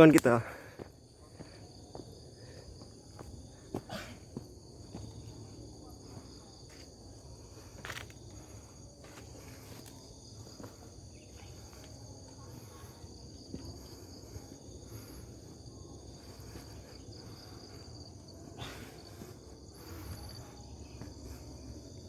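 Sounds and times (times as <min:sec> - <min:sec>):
insect chorus: 0:00.0 - 0:22.0
footsteps on dirt trail: 0:00.4 - 0:05.6, 0:07.6 - 0:15.2.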